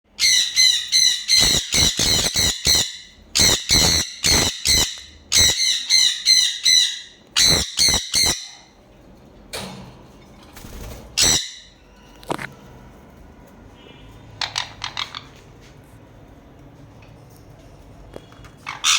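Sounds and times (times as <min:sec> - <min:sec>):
parrot screeching: 0:00.2 - 0:08.7, 0:11.2 - 0:11.8, 0:18.6 - 0:18.9.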